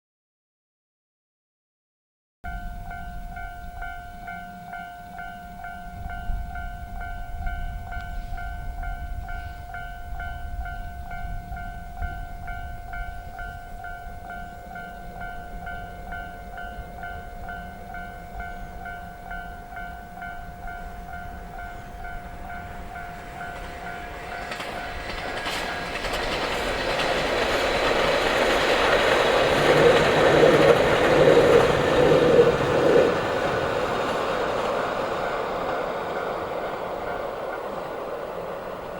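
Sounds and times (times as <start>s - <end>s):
level crossing warning bell: 2.5s - 32.4s
diesel train passing: 2.5s - 38.9s.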